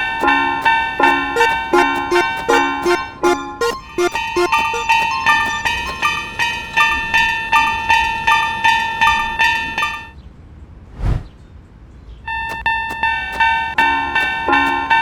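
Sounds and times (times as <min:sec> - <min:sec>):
railroad crossing bell dinging: 0:00.0 - 0:10.2, 0:12.3 - 0:15.0
short whoosh: 0:10.9 - 0:11.4.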